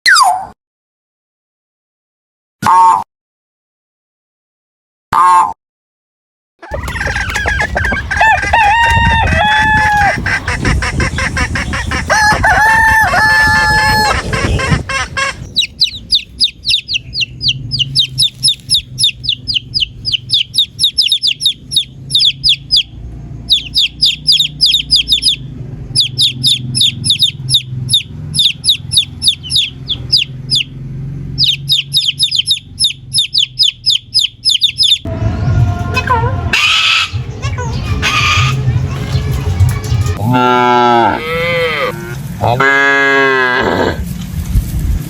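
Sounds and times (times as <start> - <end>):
rooster crowing: 6.6 - 10.5, 11.8 - 15.4
rapid high-pitched chirps: 15.4 - 22.9, 23.5 - 30.7, 31.4 - 35.1.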